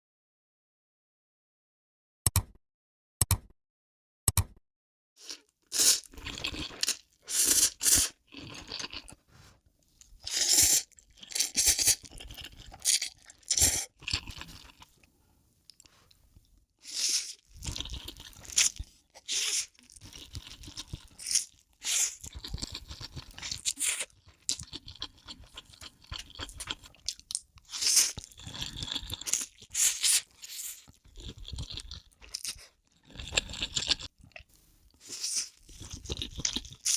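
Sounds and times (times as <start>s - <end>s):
eating crunchy noodles: 5.2s - 9.3s, 10.0s - 15.1s, 16.8s - 36.9s.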